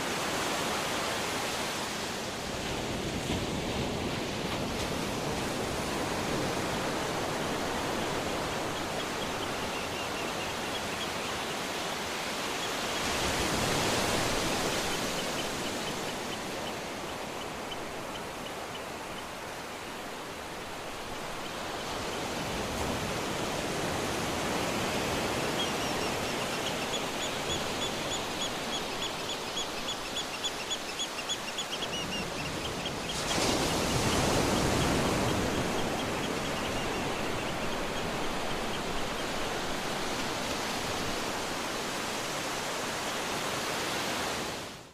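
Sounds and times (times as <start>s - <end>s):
surf washing onto beach: 0.0s - 44.8s
birds chirping: 6.6s - 22.5s, 24.2s - 41.2s.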